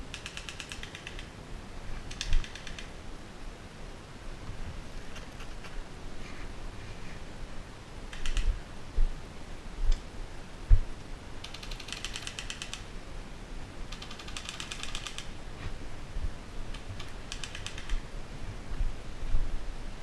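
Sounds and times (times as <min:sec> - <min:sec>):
airsoft gun firing bursts: 0:00.1 - 0:01.3, 0:13.9 - 0:15.3.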